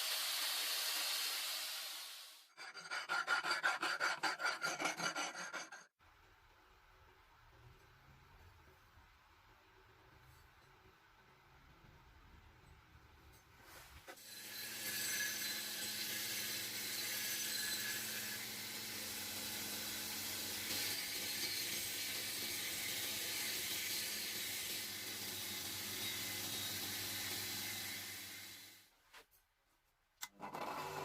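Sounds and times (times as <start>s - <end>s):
power tool hissing with motor hum: 0.0s - 2.4s, 14.3s - 28.9s.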